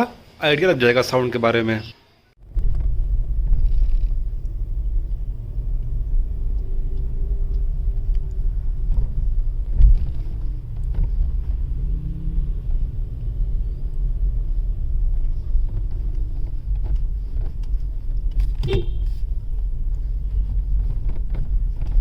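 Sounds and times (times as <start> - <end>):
loud thump: 2.4 - 11.3
low road rumble: 2.4 - 22.0.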